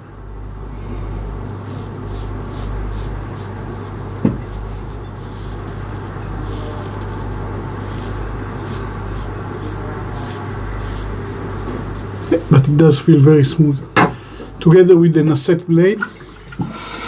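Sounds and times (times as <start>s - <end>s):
steady low hum: 0.0s - 16.7s
razor cutting stubble: 1.4s - 12.7s.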